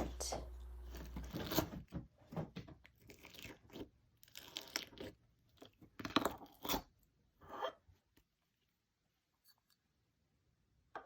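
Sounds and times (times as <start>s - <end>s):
slime squished crunchy crackles: 2.9s - 6.8s.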